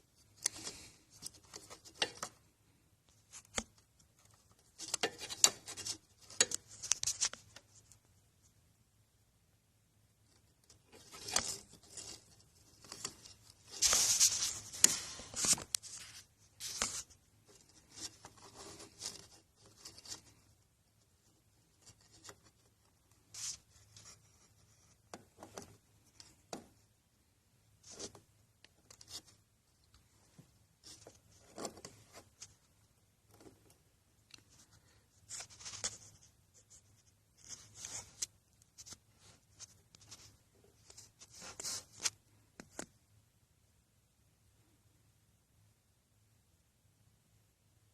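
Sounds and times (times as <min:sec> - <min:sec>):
tools and parts being handled: 0:00.2 - 0:02.5, 0:03.3 - 0:07.9, 0:10.6 - 0:20.5.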